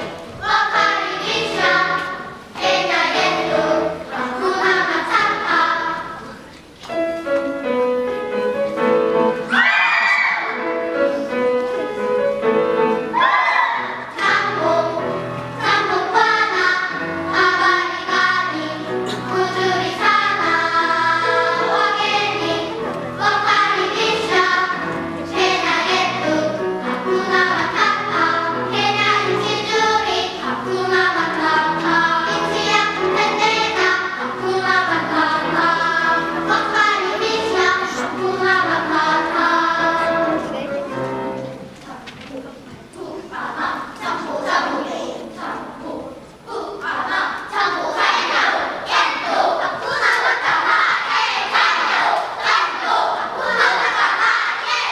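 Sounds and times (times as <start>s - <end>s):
piano accompaniment: 0.0s - 42.0s
children's choir singing: 0.0s - 54.9s.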